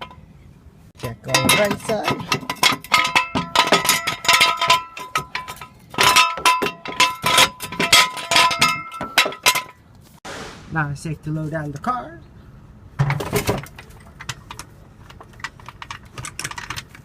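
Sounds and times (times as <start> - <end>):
metal jack stands clanking: 1.0 - 9.8, 13.0 - 17.0.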